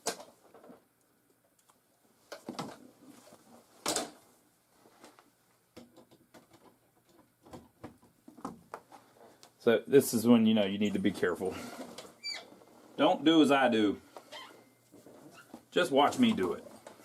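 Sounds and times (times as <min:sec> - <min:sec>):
clicks and knocks of handling wiring: 0:05.0 - 0:09.6.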